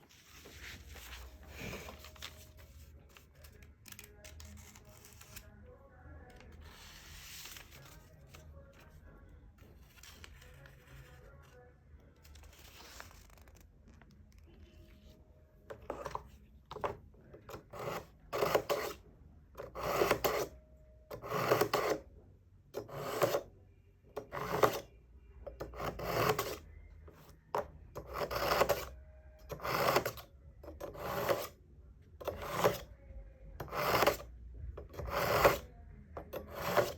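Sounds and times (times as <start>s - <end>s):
knife scraping through sharpener: 25.8s - 26.6s, 28.1s - 28.9s, 30.8s - 31.5s, 32.2s - 32.8s, 33.6s - 34.2s, 35.0s - 35.6s, 36.3s - 36.9s.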